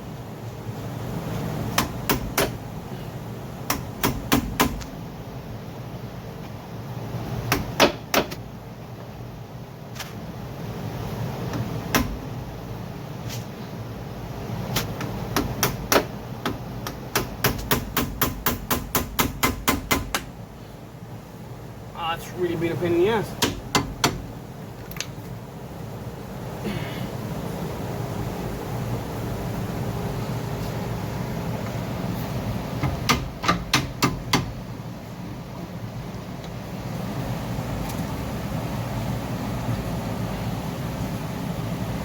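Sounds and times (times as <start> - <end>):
steady background hum: 0.0 - 42.0
hammer strikes on metal: 1.8 - 2.6, 3.7 - 4.9, 7.5 - 8.4, 11.9 - 12.2, 14.8 - 20.3, 23.4 - 24.3, 32.8 - 34.6.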